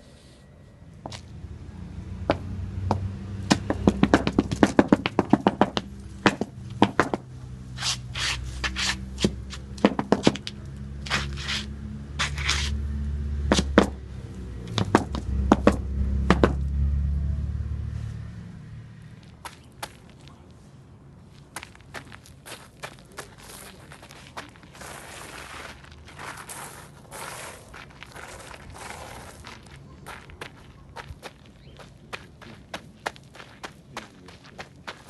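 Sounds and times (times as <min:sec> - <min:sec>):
rhythmic taps and knocks: 0:02.3 - 0:07.3.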